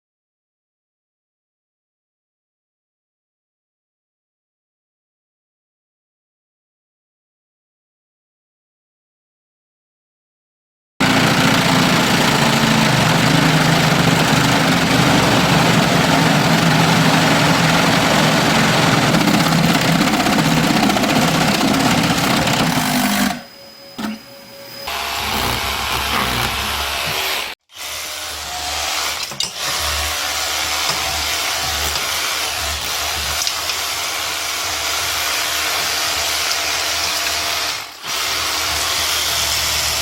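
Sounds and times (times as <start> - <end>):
power tool running: 11.0 - 40.0
quiet machine noise: 18.0 - 27.2.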